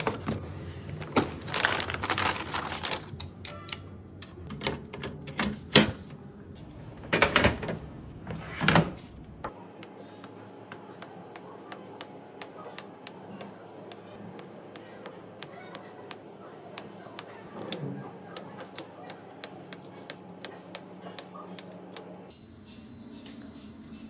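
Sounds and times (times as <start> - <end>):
computer hardware clicks and taps: 9.8 - 13.2, 13.9 - 17.8, 18.4 - 22.1.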